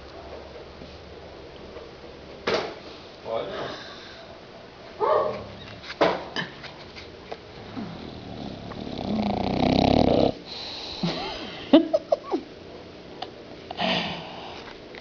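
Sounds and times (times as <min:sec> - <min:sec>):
dog snoring rasping: 0:07.6 - 0:11.0.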